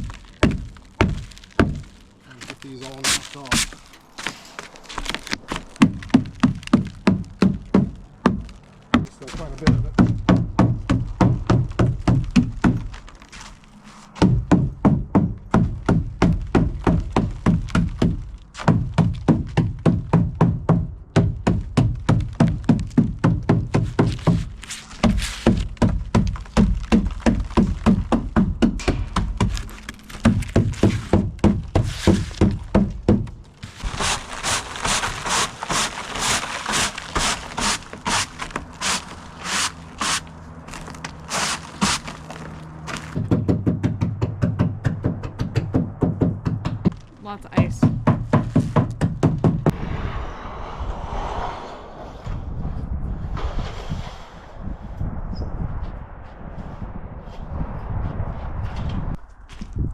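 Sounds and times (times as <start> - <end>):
ice being knocked off a roof: 0.0 - 47.1.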